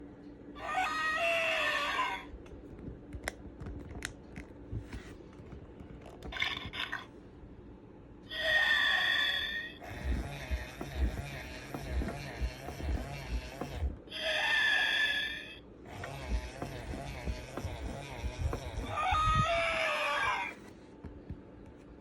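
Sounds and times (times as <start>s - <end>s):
toy dinosaur baby cries: 0.6s - 2.3s, 8.3s - 9.8s, 14.1s - 15.6s, 18.7s - 20.6s.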